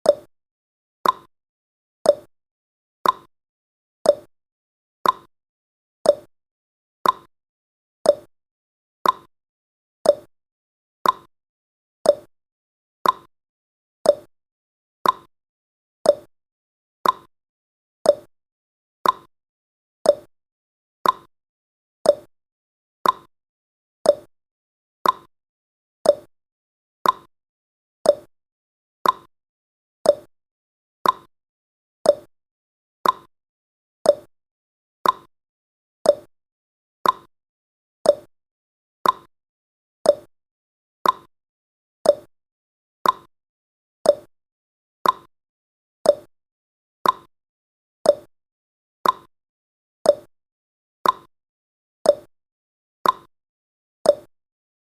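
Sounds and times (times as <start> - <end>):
timer ticking: 0.0 - 0.3, 1.0 - 1.3, 2.1 - 2.3, 3.0 - 3.3, 4.1 - 4.3, 5.0 - 5.3, 6.1 - 6.3, 7.0 - 7.3, 8.1 - 8.3, 9.0 - 9.3, 10.0 - 10.3, 11.0 - 11.3, 12.1 - 12.3, 13.0 - 13.3, 14.1 - 14.3, 15.0 - 15.3, 16.1 - 16.3, 17.0 - 17.3, 18.1 - 18.3, 19.0 - 19.3, 20.1 - 20.3, 21.0 - 21.3, 22.1 - 22.3, 23.0 - 23.3, 24.0 - 24.3, 25.0 - 25.3, 26.0 - 26.3, 27.0 - 27.3, 28.0 - 28.3, 29.0 - 29.3, 30.0 - 30.3, 31.0 - 31.3, 32.0 - 32.3, 33.0 - 33.3, 34.1 - 34.3, 35.0 - 35.3, 36.0 - 36.3, 37.0 - 37.3, 38.0 - 38.3, 39.0 - 39.3, 40.0 - 40.3, 41.0 - 41.3, 42.0 - 42.3, 43.0 - 43.3, 44.1 - 44.3, 45.0 - 45.3, 46.1 - 46.3, 47.0 - 47.3, 48.1 - 48.3, 49.0 - 49.3, 50.1 - 50.3, 51.0 - 51.3, 52.1 - 52.3, 53.0 - 53.3, 54.1 - 54.3.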